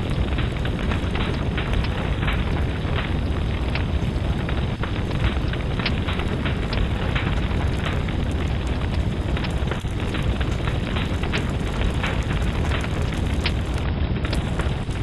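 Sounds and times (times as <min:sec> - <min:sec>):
fireplace fire crackling: 0:00.0 - 0:15.0.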